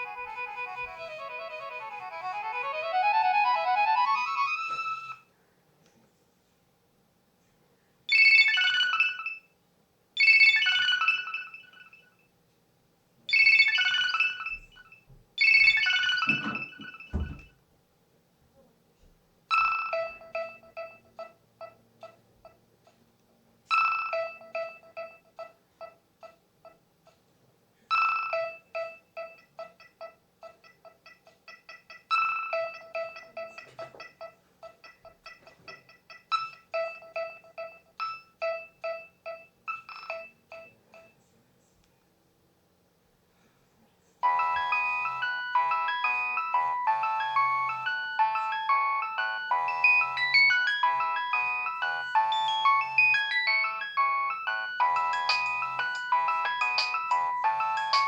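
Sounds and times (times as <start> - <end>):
phone ringtone: 0.0 - 5.2, 8.1 - 9.5, 10.2 - 12.2, 13.3 - 17.5, 19.5 - 21.8, 23.7 - 25.5, 27.9 - 29.7, 44.2 - 58.0
quick ringtone melody: 0.0 - 5.2, 8.1 - 9.4, 10.2 - 12.0, 13.3 - 14.8, 15.4 - 17.4, 44.2 - 58.0.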